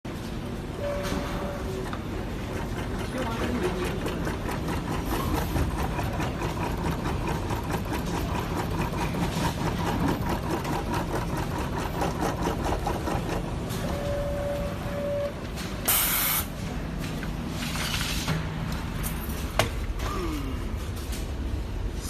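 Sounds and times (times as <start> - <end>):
machine humming: 0.4 - 16.8
steady beep tone: 13.8 - 15.4.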